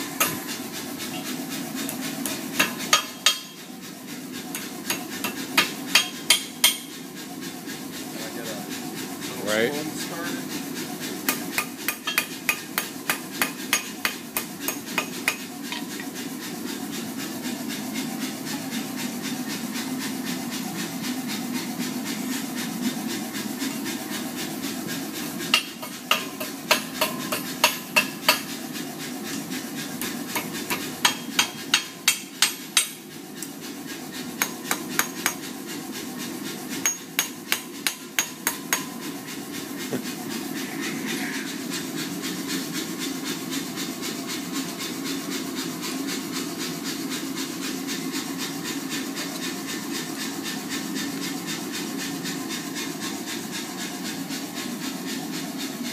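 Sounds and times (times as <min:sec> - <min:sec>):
hammer striking hot steel on anvil: 0:00.2 - 0:00.4, 0:01.9 - 0:03.6, 0:04.5 - 0:07.0, 0:11.2 - 0:16.0, 0:25.5 - 0:28.5, 0:30.0 - 0:33.5, 0:34.4 - 0:35.4, 0:36.8 - 0:39.0.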